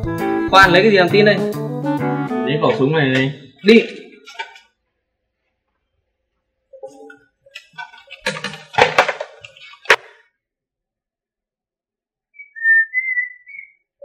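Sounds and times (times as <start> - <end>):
clatter of knocks and clicks: 4.2 - 4.7, 6.9 - 10.2
short rising whistle: 12.4 - 13.8.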